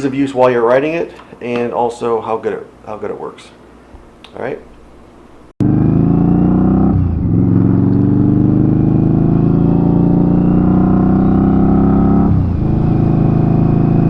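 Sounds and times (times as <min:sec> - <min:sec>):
motorcycle engine accelerating: 0:05.6 - 0:14.0.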